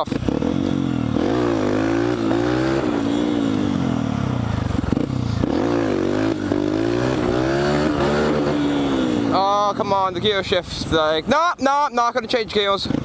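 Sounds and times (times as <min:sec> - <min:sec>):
dirt bike engine revving: 0:00.0 - 0:10.4.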